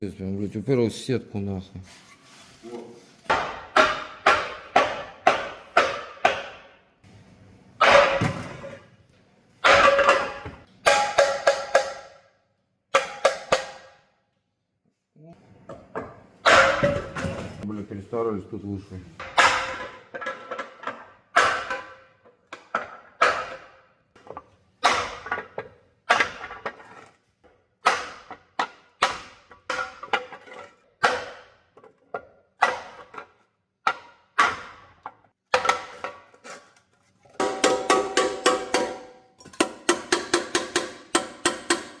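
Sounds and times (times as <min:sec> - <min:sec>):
hammer striking metal pan: 0:09.6 - 0:12.2, 0:12.9 - 0:14.0, 0:37.4 - 0:42.0.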